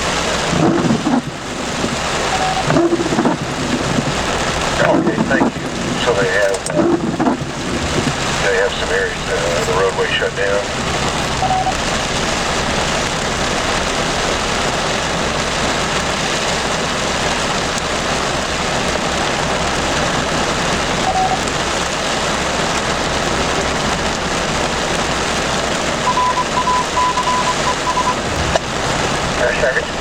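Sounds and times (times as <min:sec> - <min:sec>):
heavy rain falling: 0:00.0 - 0:30.0
electronic beeps: 0:00.6 - 0:08.2, 0:10.6 - 0:11.8, 0:21.0 - 0:21.4, 0:26.0 - 0:28.4.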